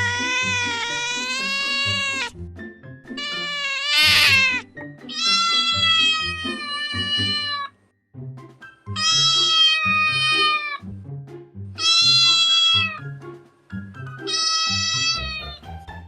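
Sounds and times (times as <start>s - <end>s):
cat meowing: 0.0s - 2.4s, 3.1s - 7.8s, 9.0s - 10.8s, 11.8s - 13.0s, 14.2s - 15.6s
background music with steady beat: 0.0s - 7.5s, 8.1s - 16.0s.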